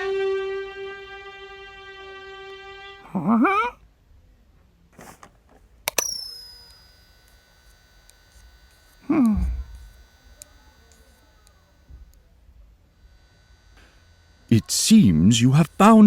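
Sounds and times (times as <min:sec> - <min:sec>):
faint steady hum: 0:00.0 - 0:16.0
bright ding: 0:05.9 - 0:07.2.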